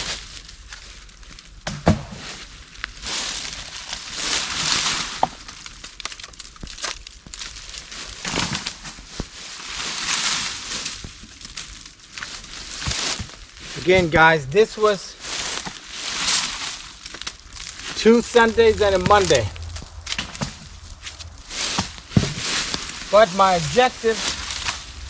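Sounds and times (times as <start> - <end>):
dry leaves and branches rustling: 0.0 - 25.0.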